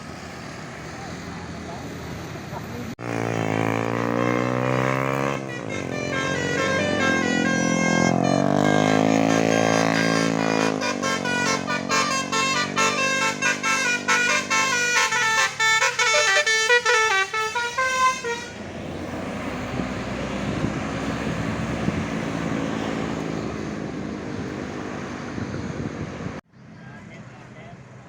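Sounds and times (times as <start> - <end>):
engine and road noise: 0.0 - 28.0
multi-tone bus horn tune: 3.0 - 19.1.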